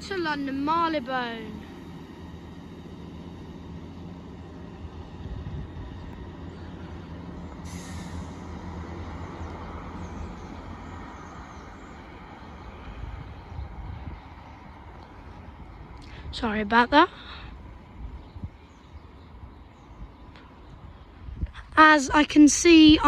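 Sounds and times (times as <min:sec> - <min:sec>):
train engine hum: 0:00.0 - 0:23.0
air brake hiss: 0:07.6 - 0:08.5.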